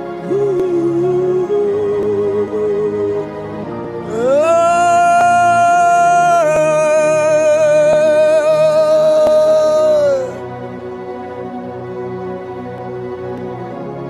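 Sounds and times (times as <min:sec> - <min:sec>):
person singing worship song: 0:00.0 - 0:10.8
soft keyboard pad: 0:00.0 - 0:14.0.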